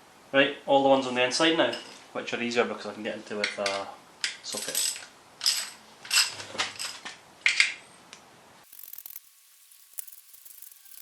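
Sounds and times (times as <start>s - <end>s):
ratchet clicking: 8.7s - 11.0s.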